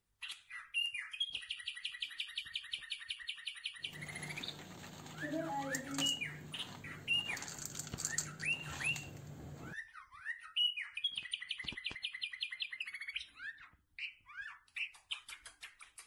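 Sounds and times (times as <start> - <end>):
small birds chirping: 0.2 - 16.0
low background hum: 3.9 - 9.7.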